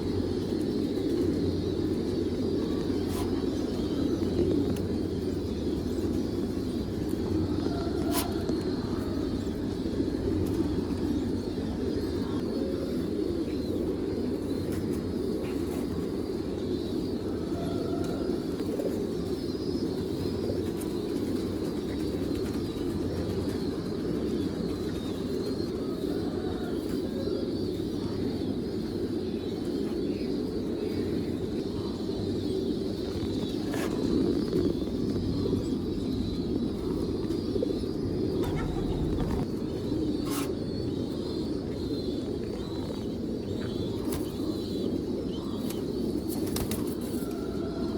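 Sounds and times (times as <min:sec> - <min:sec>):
pigeons cooing: 0:00.0 - 0:47.9.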